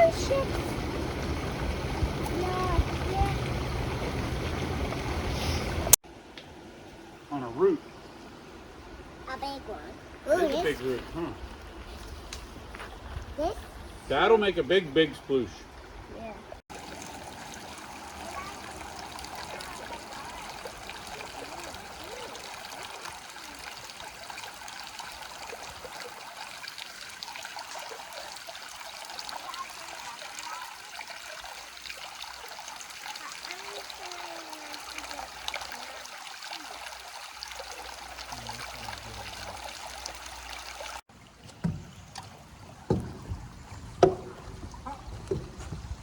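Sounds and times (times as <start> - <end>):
stream water flowing: 0.0 - 46.0
sharp knocks: 42.9 - 45.9.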